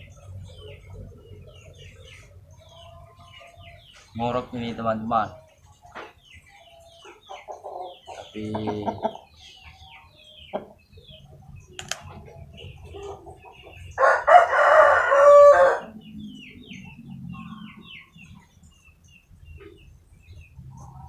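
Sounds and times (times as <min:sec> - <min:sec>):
rooster crowing: 0:14.0 - 0:16.0.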